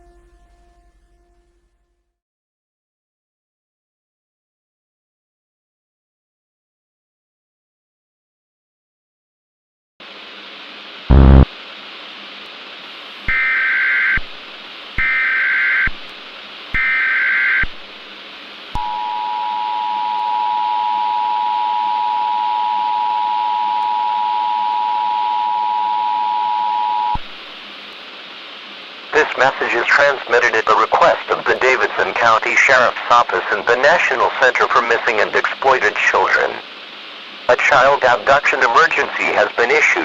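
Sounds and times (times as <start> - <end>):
static hiss: 10.0 - 13.4, 27.2 - 40.0
harsh two-tone alert signal: 11.1 - 11.5
loud burst of noise: 11.1 - 11.7.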